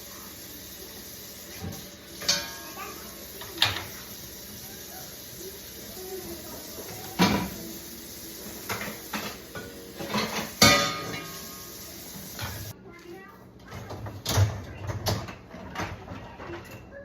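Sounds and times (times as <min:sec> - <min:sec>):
dishes clattering: 0:01.5 - 0:02.8, 0:03.4 - 0:04.1, 0:08.4 - 0:11.6.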